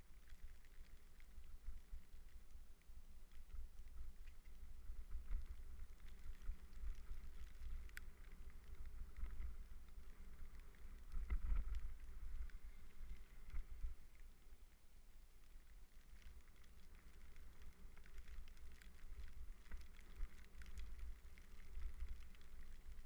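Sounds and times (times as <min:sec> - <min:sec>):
wind rumbling on microphone: 0:00.0 - 0:14.6, 0:16.0 - 0:23.0.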